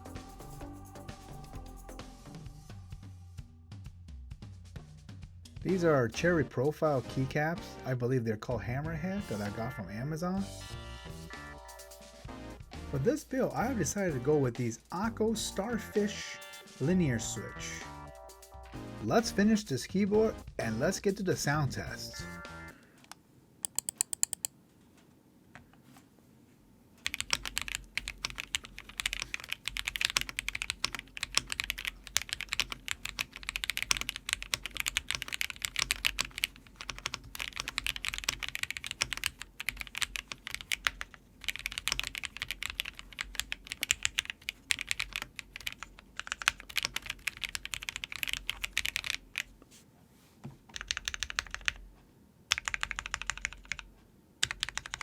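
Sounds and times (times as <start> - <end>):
mechanical keyboard typing: 23.6 - 24.5, 27.0 - 49.5, 50.7 - 51.8, 52.5 - 55.0.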